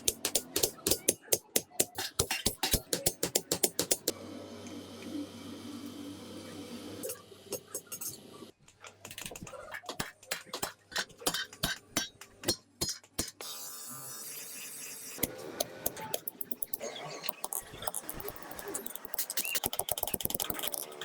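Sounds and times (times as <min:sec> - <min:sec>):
workshop noise: 0:00.0 - 0:04.1, 0:07.0 - 0:13.7.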